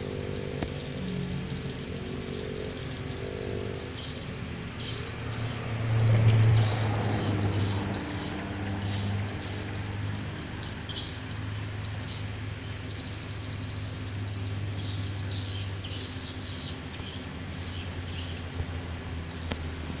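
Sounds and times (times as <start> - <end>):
steady low hum: 0.0 - 6.0
insects chirping: 0.0 - 20.0.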